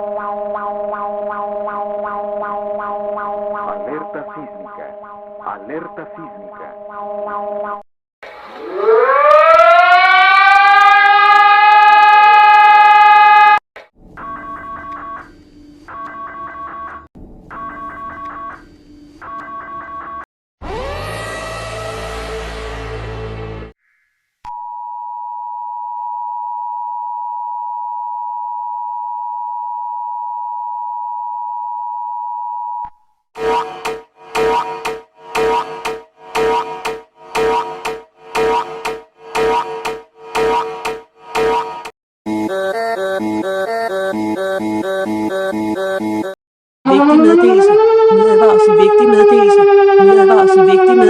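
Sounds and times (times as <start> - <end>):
alarm sound: 0.0 - 7.8, 8.6 - 13.6, 33.4 - 51.0
siren wailing: 8.4 - 13.6, 20.6 - 23.6, 33.4 - 41.9, 46.9 - 51.0
electronic emergency alert tone: 33.4 - 41.8, 43.9 - 51.0.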